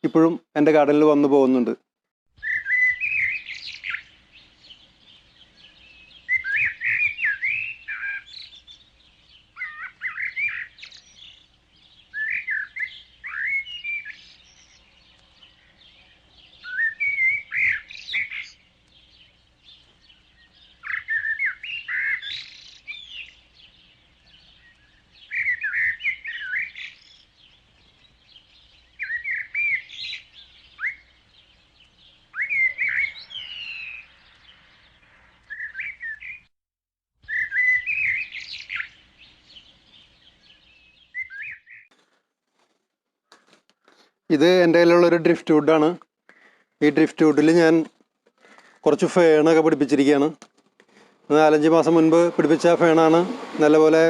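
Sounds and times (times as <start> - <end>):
songbird warbling: 2.4 - 36.5, 37.2 - 41.9.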